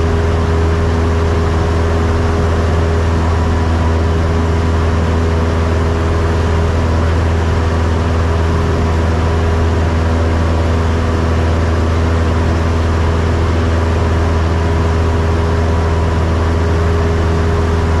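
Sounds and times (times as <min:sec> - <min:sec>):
propeller plane engine drone: 0:00.0 - 0:18.0.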